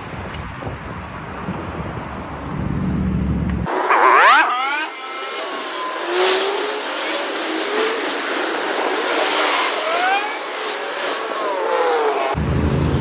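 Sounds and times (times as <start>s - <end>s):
wind noise: 0.0s - 3.7s
road traffic: 0.0s - 13.0s
vehicle whines: 0.0s - 13.0s.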